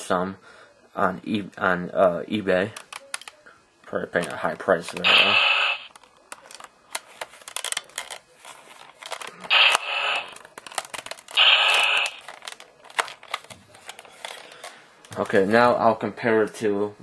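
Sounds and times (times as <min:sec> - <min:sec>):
plastic clicks: 0:02.8 - 0:03.4, 0:05.9 - 0:15.2
cards being handled: 0:04.2 - 0:15.5
toy belt electronic sound effects: 0:05.0 - 0:05.9, 0:09.5 - 0:10.4, 0:11.4 - 0:12.3.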